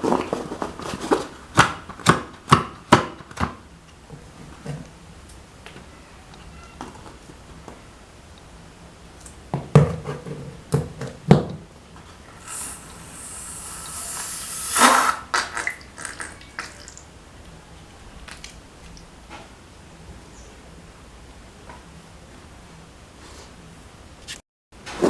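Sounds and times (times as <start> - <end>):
hiss: 12.4 - 15.4.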